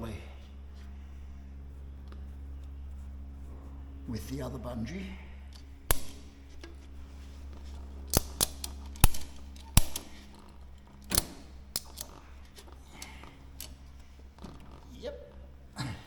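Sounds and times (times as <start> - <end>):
ratchet strap clicking: 5.5 - 14.8.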